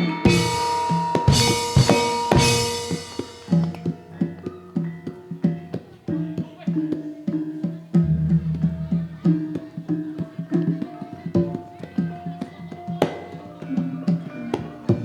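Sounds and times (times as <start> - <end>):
gamelan ensemble playing: 0.0 - 5.4
hand drum strokes: 0.0 - 15.0.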